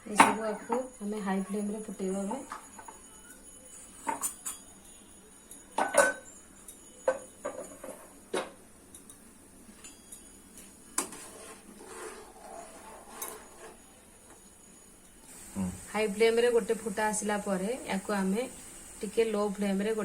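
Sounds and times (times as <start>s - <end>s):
utensils knocking against pot: 5.8s - 6.3s.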